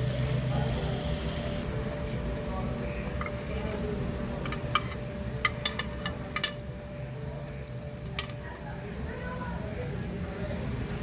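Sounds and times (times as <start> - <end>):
steady low hum: 0.0 - 11.0
utensil clinking on dishes: 4.4 - 6.7, 8.0 - 8.6.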